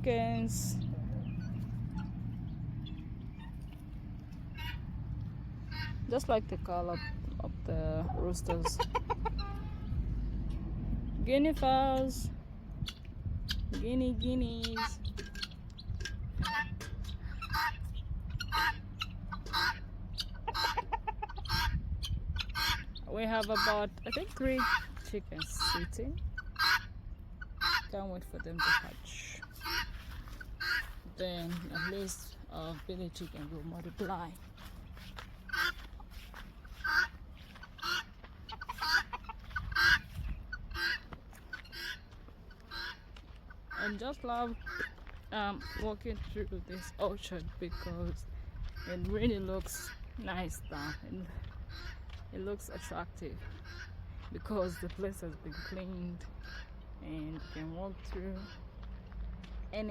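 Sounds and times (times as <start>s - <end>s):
poultry harsh calls: 4.5s - 4.9s, 5.6s - 6.1s, 14.6s - 32.8s, 33.4s - 46.0s, 49.8s - 52.2s, 53.4s - 58.8s.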